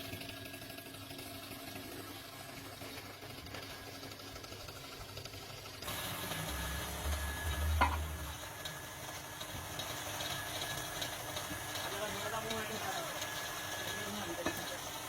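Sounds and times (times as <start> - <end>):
workshop machinery running: 0.0 - 15.0.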